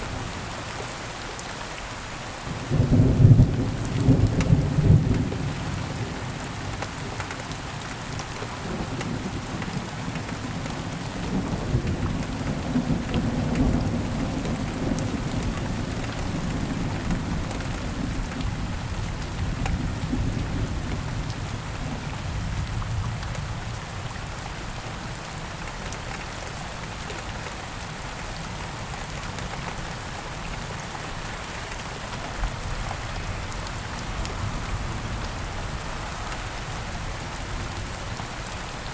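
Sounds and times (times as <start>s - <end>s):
steady rain falling: 0.0s - 38.9s
low rolling thunder: 2.6s - 6.3s.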